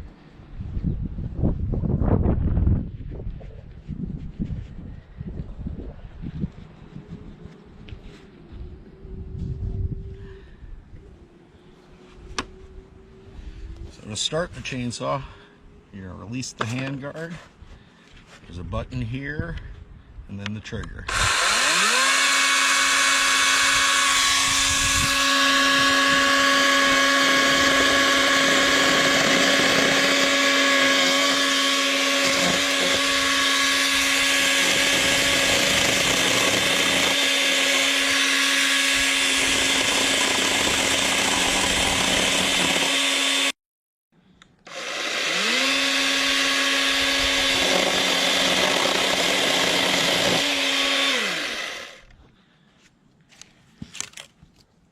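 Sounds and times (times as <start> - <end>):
electric chainsaw whine: 21.1 - 43.6, 44.6 - 52.2.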